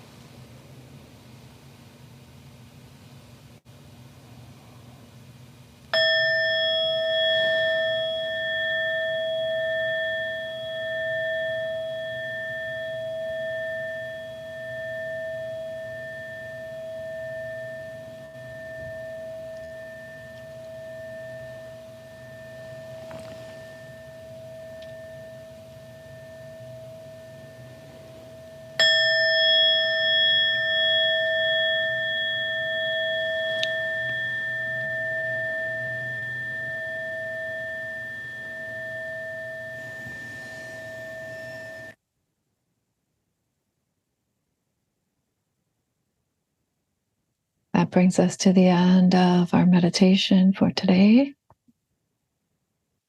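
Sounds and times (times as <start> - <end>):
meditation bell ringing: 6.0 - 42.0.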